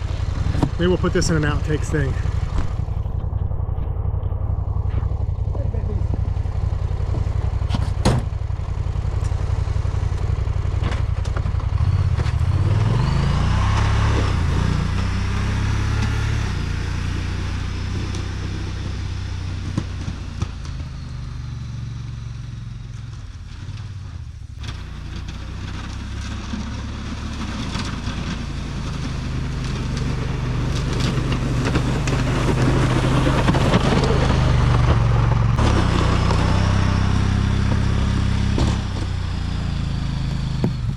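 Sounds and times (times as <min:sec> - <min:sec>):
snow plow engine revving: 0:00.0 - 0:40.9.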